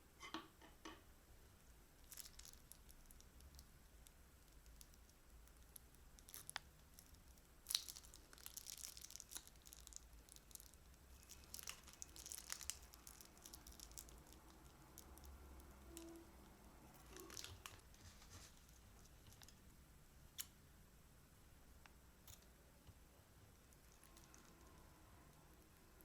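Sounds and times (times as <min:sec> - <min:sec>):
crunchy slime crackling in plastic bags: 0:02.0 - 0:19.6, 0:23.8 - 0:25.0.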